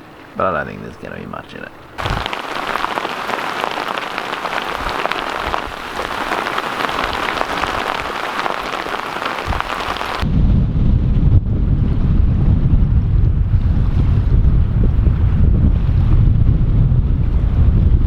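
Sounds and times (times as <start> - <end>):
heavy rain on hard surface: 2.0 - 10.2
wind rumbling on microphone: 2.0 - 18.0.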